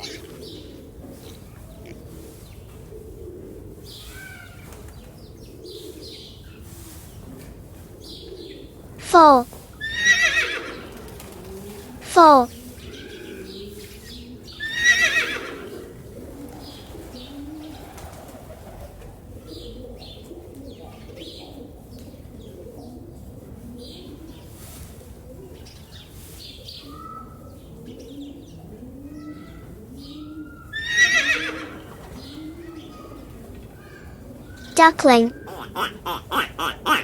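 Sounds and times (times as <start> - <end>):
small birds chirping: 0.0 - 2.9, 32.2 - 37.0
doves cooing: 0.0 - 6.5, 9.8 - 24.5, 27.8 - 34.7, 35.3 - 37.0
horse whinnying: 9.8 - 10.8, 14.7 - 15.6, 30.8 - 31.8.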